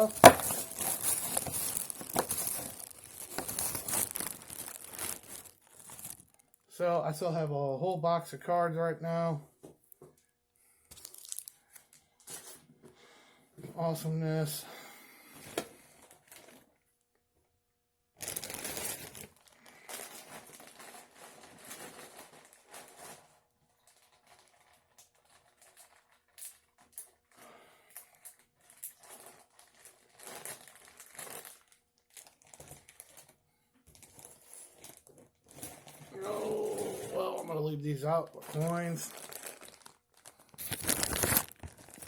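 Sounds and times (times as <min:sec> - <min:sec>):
cards and packaging rustling: 0:00.0 - 0:06.7, 0:10.9 - 0:12.6, 0:18.2 - 0:23.2, 0:28.0 - 0:42.0.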